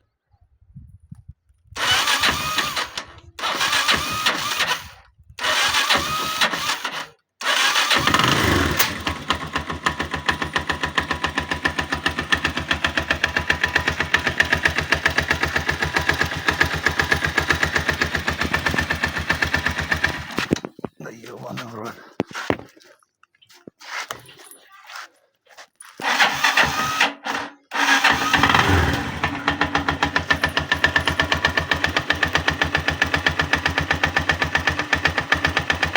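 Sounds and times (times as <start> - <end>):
motorcycle engine cranking: 1.8 - 21.0, 26.0 - 35.9
motorcycle engine running: 7.9 - 20.8, 27.8 - 35.9.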